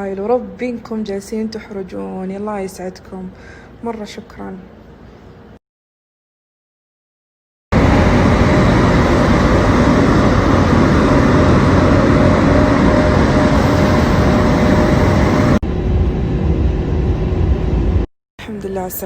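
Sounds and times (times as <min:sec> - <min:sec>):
vehicle in motion: 0:07.8 - 0:18.1.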